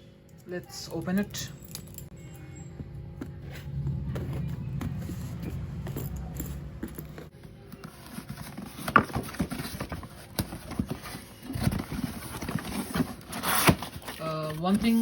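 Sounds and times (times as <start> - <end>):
package rustling and scraping: 7.2 - 15.0.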